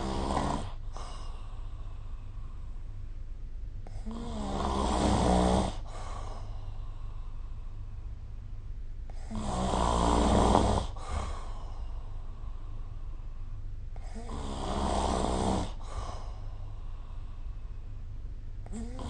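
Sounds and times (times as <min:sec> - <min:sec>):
person snoring: 0:00.0 - 0:02.2, 0:03.9 - 0:07.2, 0:09.1 - 0:13.0, 0:14.0 - 0:17.4, 0:18.6 - 0:19.0
low steady hum: 0:00.0 - 0:19.0.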